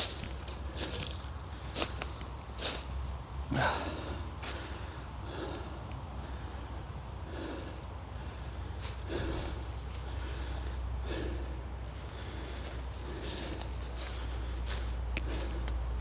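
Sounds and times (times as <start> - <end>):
crunching footsteps: 0.0 - 4.7, 8.8 - 16.0
person breathing hard: 3.5 - 15.7.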